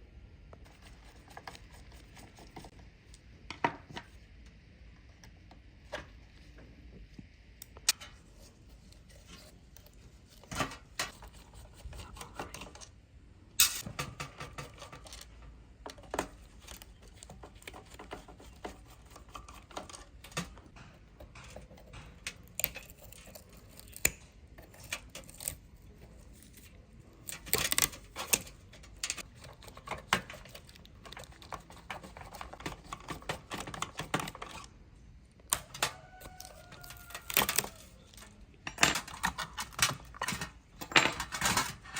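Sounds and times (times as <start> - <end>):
hard objects clicking and clattering: 35.5 - 41.9.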